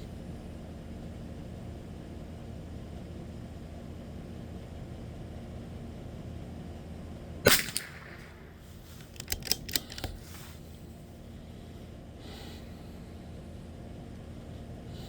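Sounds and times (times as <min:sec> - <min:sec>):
rifle shot: 0:07.5 - 0:10.2
rifle bolt clicking: 0:07.5 - 0:10.5.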